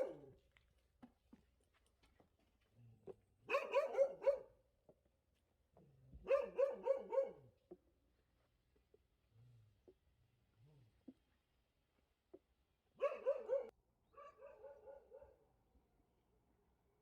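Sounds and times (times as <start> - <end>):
dog barking: 0.0 - 0.4, 3.4 - 4.6, 6.2 - 7.6, 13.0 - 15.5.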